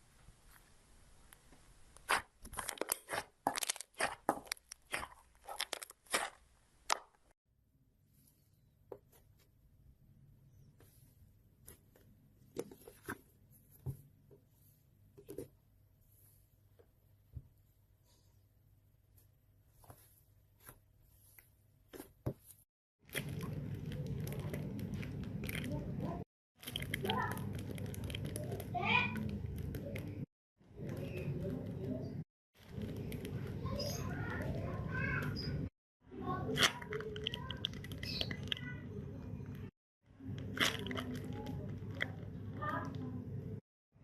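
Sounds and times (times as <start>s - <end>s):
slime crackling and popping: 2.0s - 7.2s.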